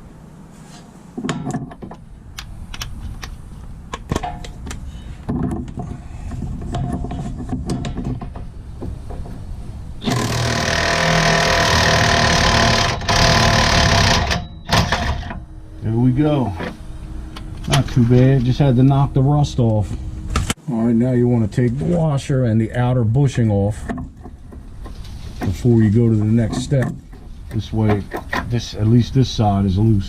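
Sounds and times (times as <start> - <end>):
impact wrench hammering: 10.0 - 15.4.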